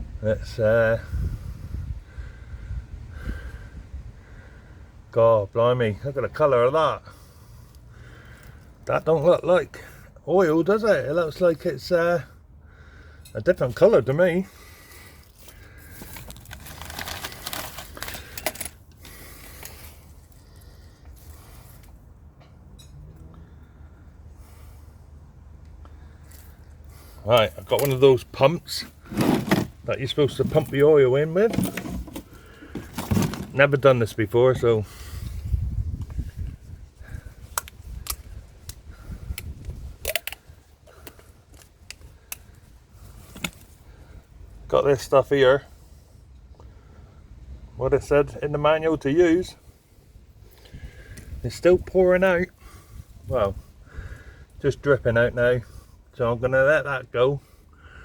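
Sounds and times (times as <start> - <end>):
tools and containers clicking: 40.0 - 40.4.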